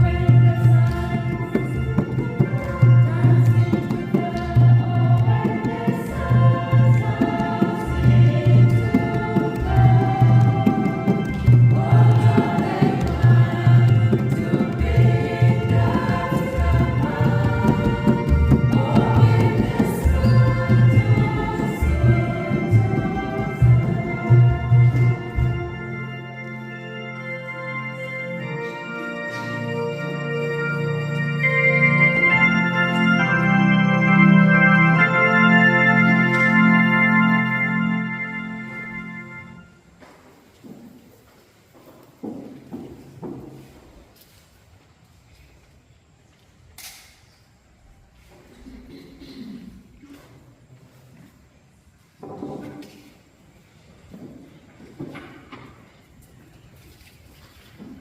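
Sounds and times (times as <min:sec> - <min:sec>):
choir and congregation singing hymn: 0:00.0 - 0:39.9
organ playing sustained chords: 0:00.0 - 0:40.1.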